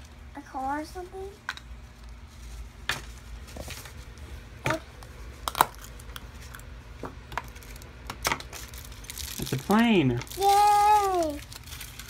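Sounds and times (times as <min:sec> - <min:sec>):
plastic clicks and wrapping crinkles: 0:07.3 - 0:12.0.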